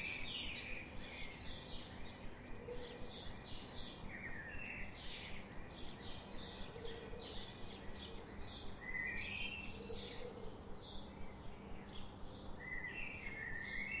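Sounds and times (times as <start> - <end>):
small birds chirping: 0.0 - 14.0
steady background hiss: 0.0 - 14.0.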